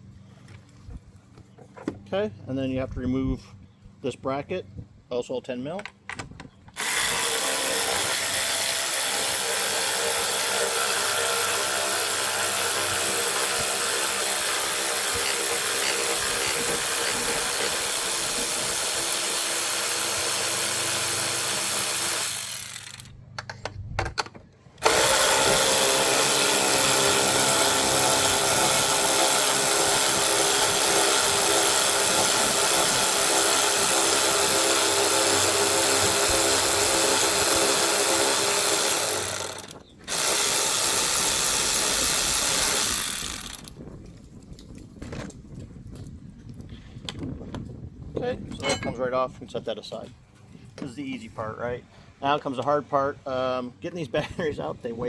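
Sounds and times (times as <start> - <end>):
yard power equipment rushing: 24.8 - 43.8.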